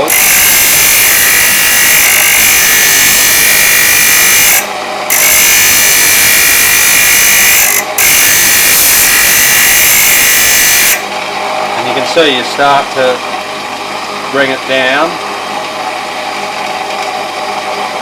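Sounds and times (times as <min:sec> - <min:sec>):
grinder grinding steel: 0:00.0 - 0:03.8, 0:04.5 - 0:11.0.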